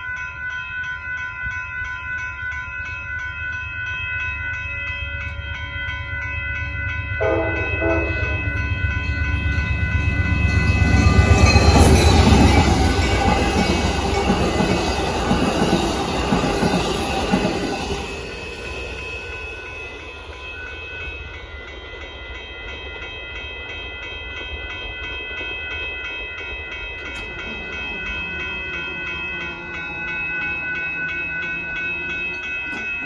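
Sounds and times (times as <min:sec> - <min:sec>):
crossing bell ringing: 0:00.0 - 0:33.0
train passing: 0:00.0 - 0:33.0
train horn: 0:07.2 - 0:08.8.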